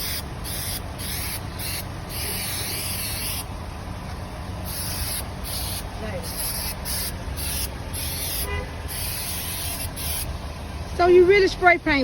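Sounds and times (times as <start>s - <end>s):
aerosol spray can hissing: 0.0s - 3.5s, 4.7s - 10.3s.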